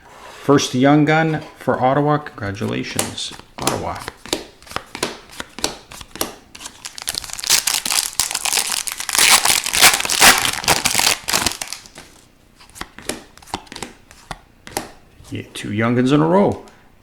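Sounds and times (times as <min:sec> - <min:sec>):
foil wrapper crinkling: 0:03.2 - 0:12.3.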